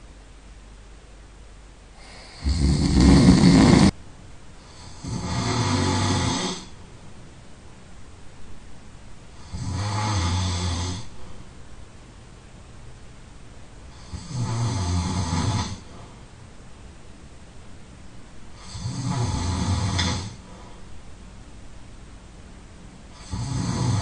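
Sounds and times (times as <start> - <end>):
quiet breathing: 1.9 - 4.0, 4.6 - 6.9, 9.3 - 11.6, 13.8 - 16.5, 18.5 - 21.1
person snoring loudly: 2.0 - 4.0, 4.7 - 6.8, 9.4 - 11.2, 13.9 - 15.9, 18.6 - 20.4, 23.1 - 24.0.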